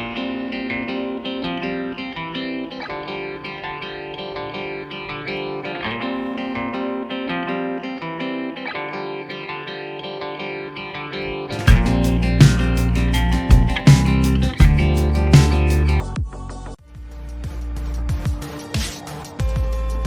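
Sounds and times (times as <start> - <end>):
guitar background music: 0.0 - 16.0
heavy bass and hits: 11.6 - 16.3.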